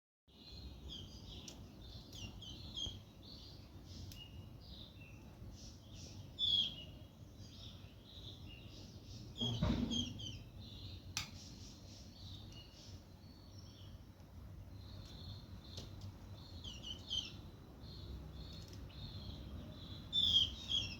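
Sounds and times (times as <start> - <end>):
small birds chirping: 0.3 - 20.9
thump: 9.4 - 10.2.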